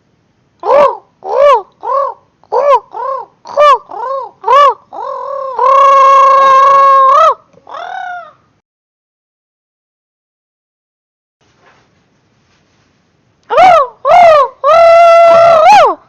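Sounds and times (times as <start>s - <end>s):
person imitating creature squawks: 0.6s - 8.4s, 13.5s - 16.0s.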